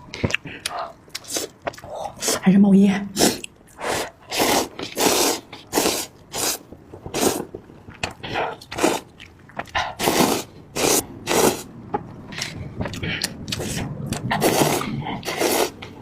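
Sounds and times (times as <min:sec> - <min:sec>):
noodles being slurped: 0:03.2 - 0:09.1, 0:09.9 - 0:11.7, 0:13.5 - 0:16.0.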